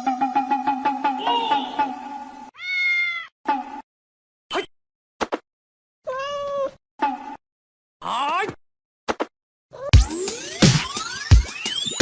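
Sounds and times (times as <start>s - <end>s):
cat meowing: 2.6s - 3.3s, 6.1s - 6.8s.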